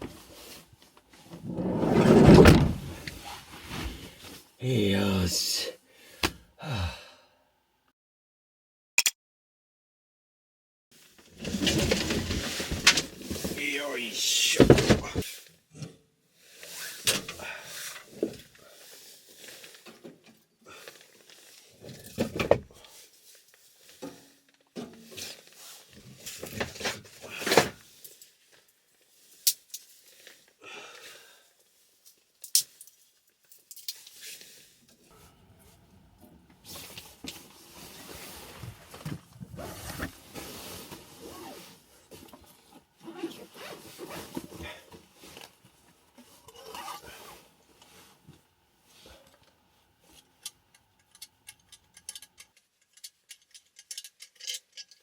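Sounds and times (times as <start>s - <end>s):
rustling: 1.2s - 4.3s.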